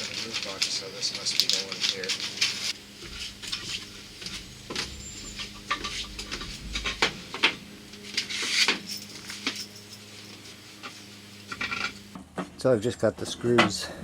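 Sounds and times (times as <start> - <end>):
metal screws clinking: 2.9 - 12.1.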